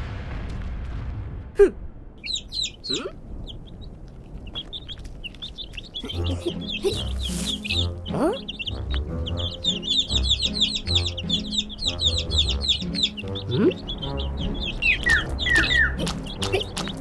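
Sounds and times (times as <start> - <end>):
high bird chirps: 2.2 - 17.0
falling whistles: 14.7 - 16.0.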